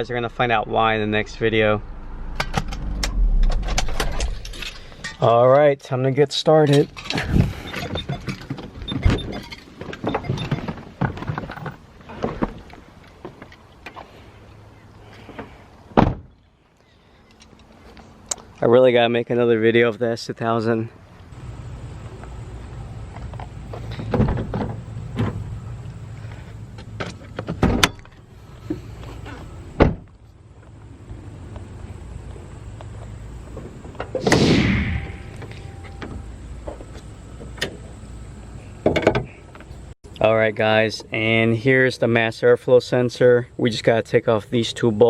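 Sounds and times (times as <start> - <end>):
steady low hum: 0.0 - 5.3, 34.2 - 38.7
knocks and clunks: 2.3 - 5.3, 6.7 - 12.7, 23.3 - 25.5, 38.8 - 39.7.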